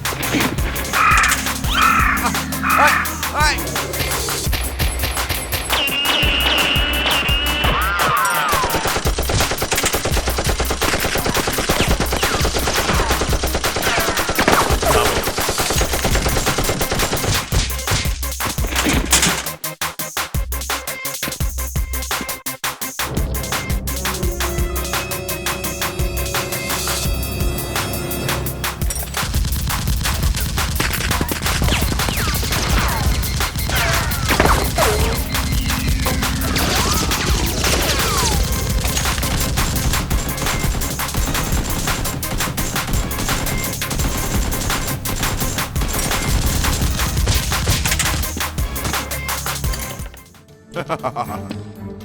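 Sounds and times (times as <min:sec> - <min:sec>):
background music: 0:00.0 - 0:52.0
falling whistles: 0:05.5 - 0:08.9
automatic gunfire: 0:08.5 - 0:18.0, 0:29.1 - 0:50.0.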